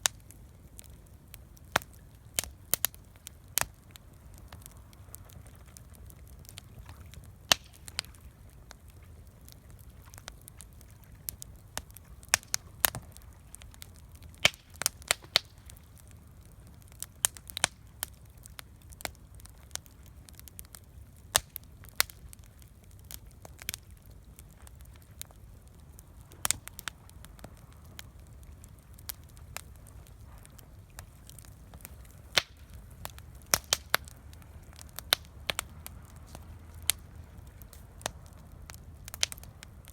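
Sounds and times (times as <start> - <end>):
campfire crackling: 0.0 - 39.9
faint low rumble: 21.8 - 39.9.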